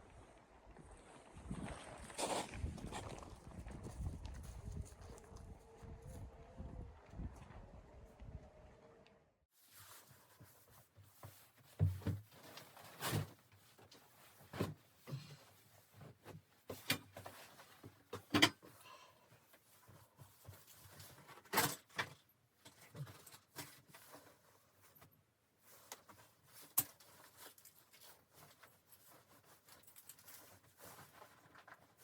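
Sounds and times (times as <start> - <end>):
quiet rustling: 9.5 - 32.0.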